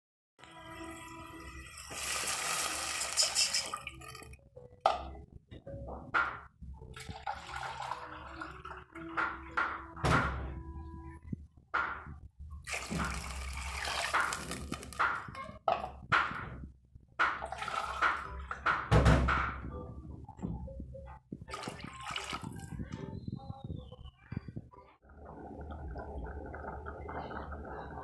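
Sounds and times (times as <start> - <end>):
water running and splashing: 1.4 - 4.4, 12.6 - 15.2.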